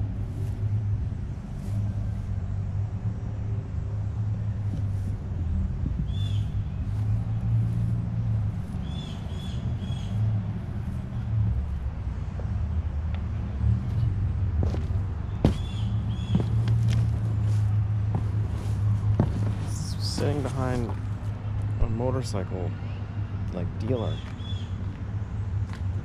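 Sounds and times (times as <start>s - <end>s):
road traffic rumble: 0.0s - 26.0s
bird chirps: 6.1s - 6.8s, 8.8s - 10.2s, 15.6s - 16.5s.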